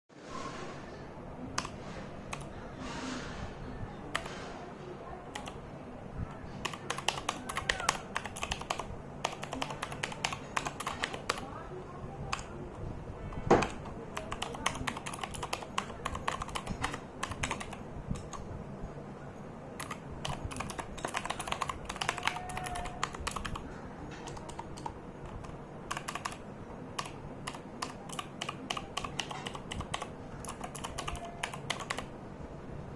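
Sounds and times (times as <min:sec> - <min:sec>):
mechanical keyboard typing: 0:01.5 - 0:02.5, 0:04.1 - 0:04.4, 0:05.3 - 0:05.6, 0:06.6 - 0:18.5, 0:19.8 - 0:32.1.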